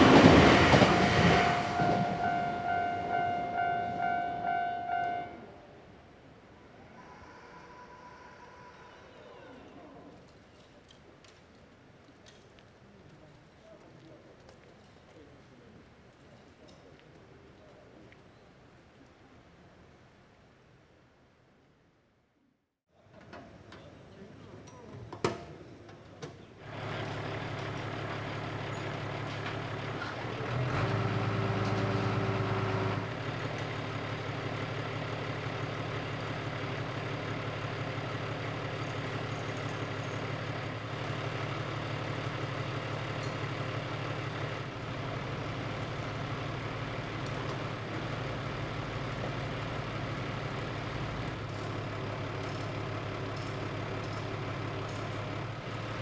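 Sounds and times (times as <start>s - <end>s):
heavy diesel engine idling: 26.7s - 56.0s.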